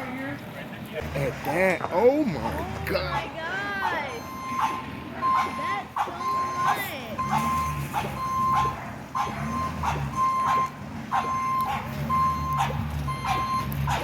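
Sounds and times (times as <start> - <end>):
truck engine running: 0.0 - 14.0
reversing alarm beeping: 4.1 - 14.0.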